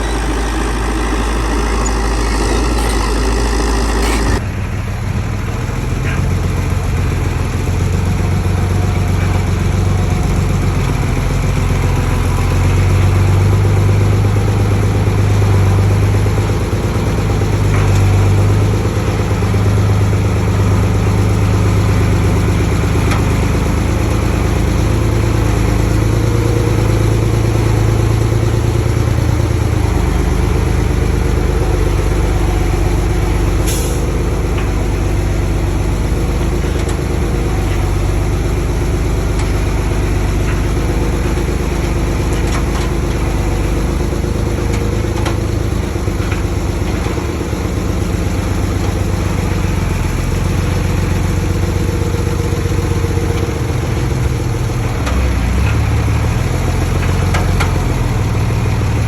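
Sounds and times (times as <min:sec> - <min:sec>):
high-pitched hiss or squeal: 0:00.0 - 0:04.4
heavy diesel engine running: 0:00.0 - 0:59.0.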